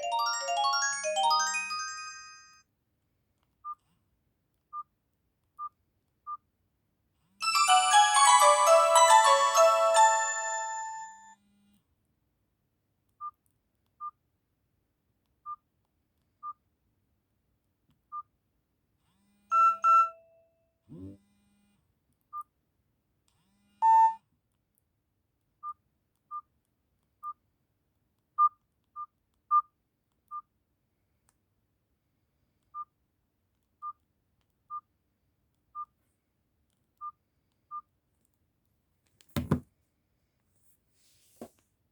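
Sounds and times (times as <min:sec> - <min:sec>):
phone ringtone: 0:00.0 - 0:02.6, 0:07.4 - 0:11.3, 0:19.5 - 0:20.4
brief phone tones: 0:19.5 - 0:20.4, 0:23.8 - 0:24.2
keypad beeps: 0:19.5 - 0:20.4, 0:23.8 - 0:24.2.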